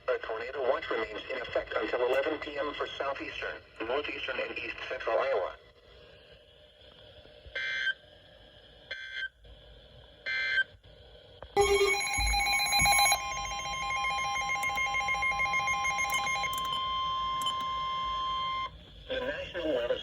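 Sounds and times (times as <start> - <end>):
loud alert tone: 11.6 - 17.6
electronic data bursts: 11.6 - 18.7.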